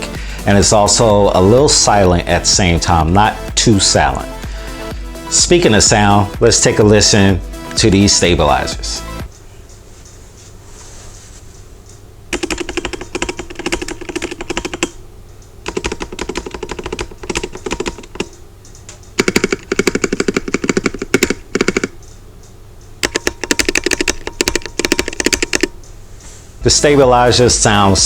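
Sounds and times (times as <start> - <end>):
mechanical keyboard key presses: 12.3 - 15.0, 15.7 - 18.3, 19.2 - 22.0, 23.0 - 25.7.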